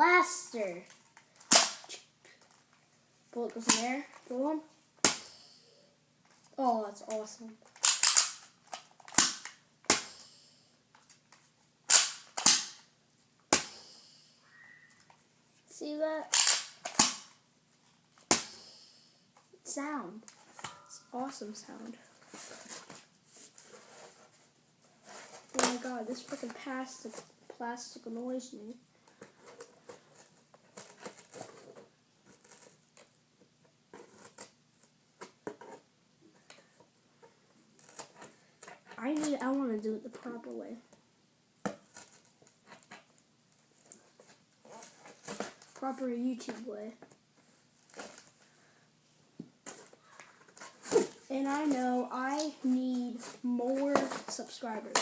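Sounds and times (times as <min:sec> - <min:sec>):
dart blaster plastic clacks: 0:07.8 - 0:08.4.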